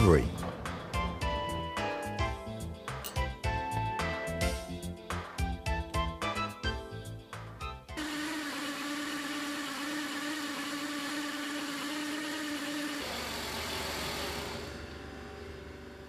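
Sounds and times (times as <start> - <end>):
valve grinding machine whine: 8.0 - 16.0.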